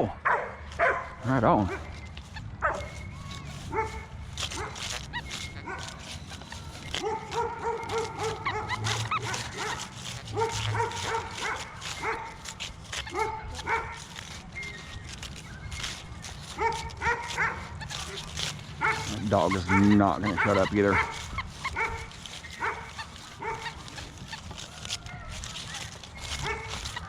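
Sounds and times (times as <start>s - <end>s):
dog barking: 0.2s - 1.9s, 2.6s - 3.0s, 3.7s - 4.9s, 5.6s - 6.0s, 6.9s - 14.2s, 16.6s - 18.2s, 18.8s - 23.9s, 26.4s - 26.8s.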